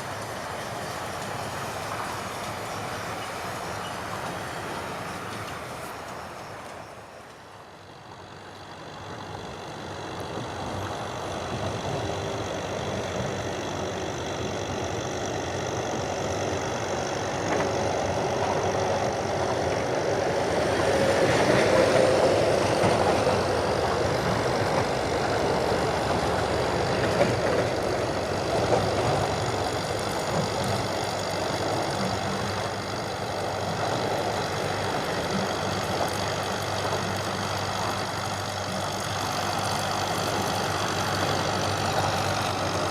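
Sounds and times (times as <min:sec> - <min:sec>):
tractor diesel engine under load: 0:00.0 - 0:42.9.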